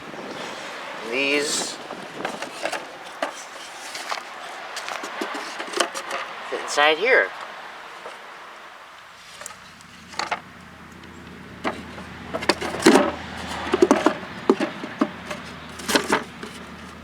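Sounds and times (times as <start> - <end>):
wooden frames clacking: 1.4 - 6.7, 9.3 - 17.0
low steady hum: 8.9 - 17.0.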